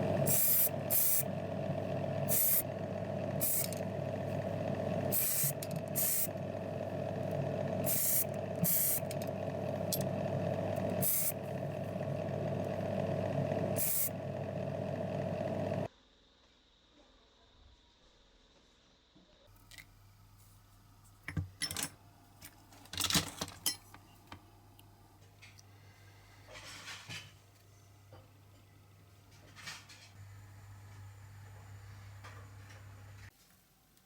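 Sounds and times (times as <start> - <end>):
compressed air spray hissing: 0.0 - 1.3, 2.2 - 2.6, 3.4 - 3.8, 5.1 - 6.3, 7.8 - 9.1, 11.0 - 11.4, 13.8 - 14.1
small motor running: 0.0 - 15.9.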